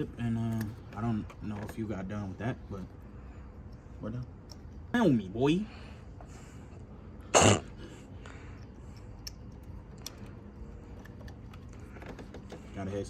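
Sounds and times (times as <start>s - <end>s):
person coughing: 7.3s - 7.8s.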